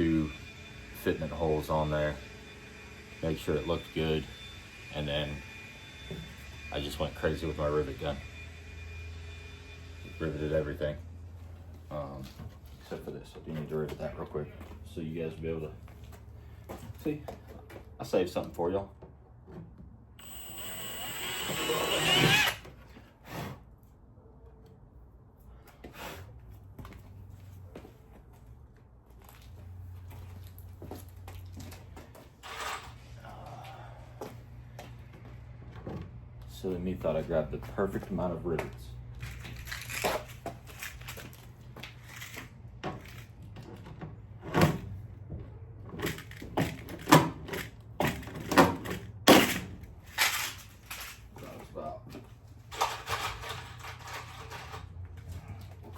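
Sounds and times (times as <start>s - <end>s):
power rivet gun running: 20.2s - 22.7s.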